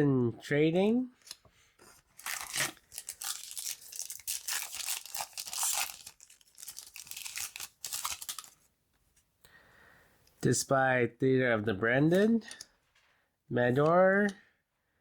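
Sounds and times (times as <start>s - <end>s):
foil wrapper tearing and crinkling: 2.1s - 8.6s.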